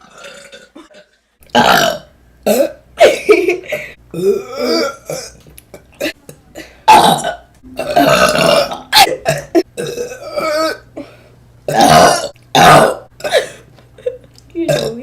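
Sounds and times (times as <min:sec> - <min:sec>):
women burping loudly: 0:00.0 - 0:11.0, 0:11.7 - 0:13.6, 0:14.6 - 0:15.0.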